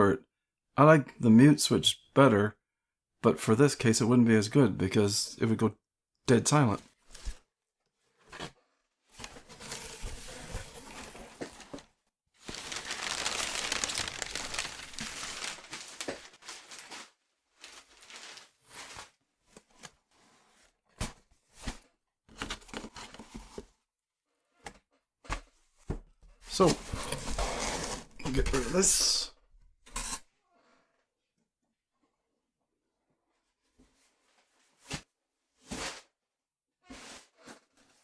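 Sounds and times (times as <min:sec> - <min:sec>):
packaging crinkling and tearing: 0:12.4 - 0:19.1.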